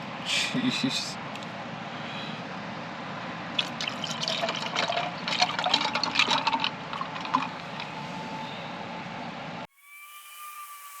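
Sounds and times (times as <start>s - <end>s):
liquid pouring into a cup: 3.6s - 7.9s.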